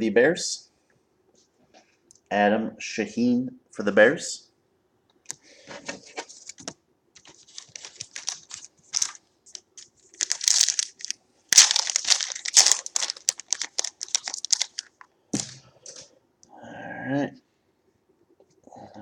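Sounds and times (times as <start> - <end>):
card pack wrapper crinkling: 6.4 - 15.5.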